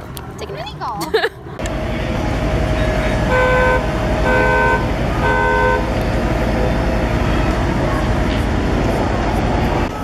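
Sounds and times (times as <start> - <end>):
engine and traffic rumble: 0.0 - 10.0
vehicle horn toots: 3.2 - 5.9.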